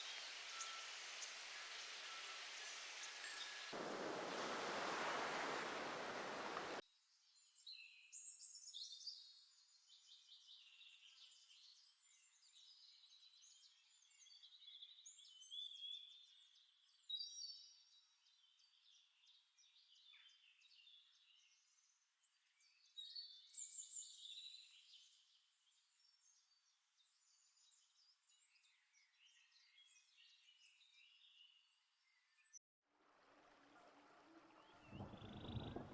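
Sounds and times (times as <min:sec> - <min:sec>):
steady hiss: 0:00.0 - 0:06.8
birds chirping and trilling: 0:34.5 - 0:35.9.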